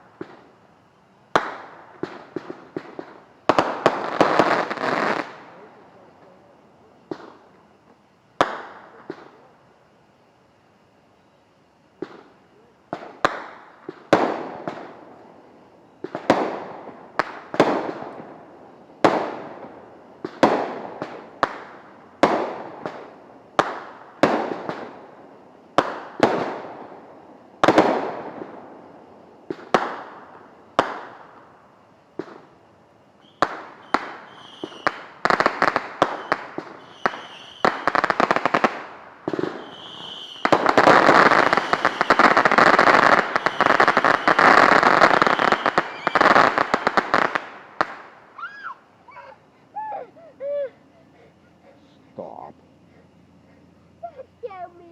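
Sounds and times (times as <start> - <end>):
fireworks whistles: 0.0 - 5.6, 33.2 - 50.1
fireworks crackling: 0.0 - 9.9, 11.8 - 50.5, 51.3 - 54.9
fireworks bangs: 1.3 - 5.7, 8.4 - 9.4, 12.0 - 15.2, 16.0 - 28.8, 29.4 - 31.4, 33.2 - 48.8.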